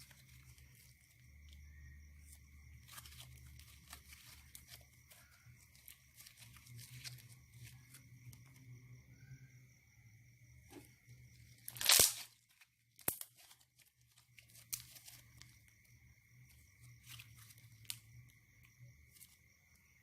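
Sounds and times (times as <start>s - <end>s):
small ticks and crackles: 0.0s - 8.9s, 10.6s - 20.0s
loud tearing: 11.7s - 12.4s.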